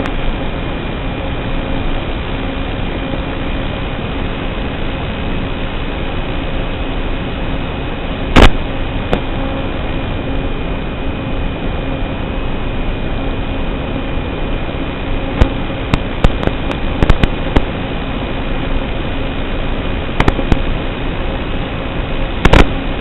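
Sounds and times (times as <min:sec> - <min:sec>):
electric motor hiss and whine: 0:00.0 - 0:23.0
sharp clicks or pops: 0:08.4 - 0:09.3, 0:15.4 - 0:17.7, 0:20.2 - 0:20.6, 0:22.4 - 0:22.7.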